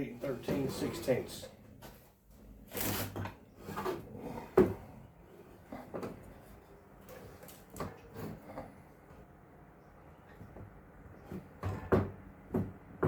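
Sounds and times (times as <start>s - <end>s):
wooden board knocking and scraping: 10.4s - 13.0s.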